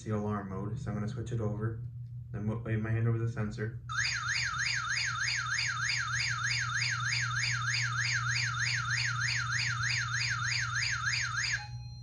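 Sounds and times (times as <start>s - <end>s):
steady low hum: 0.0s - 12.0s
warbling electronic siren: 3.9s - 12.0s.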